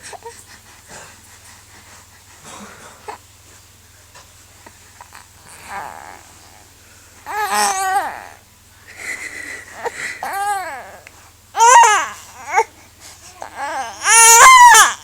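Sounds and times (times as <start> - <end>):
baby fussing and whimpering: 5.0 - 15.0
baby crying: 5.4 - 6.6, 7.3 - 8.4, 9.7 - 12.7, 13.3 - 15.0.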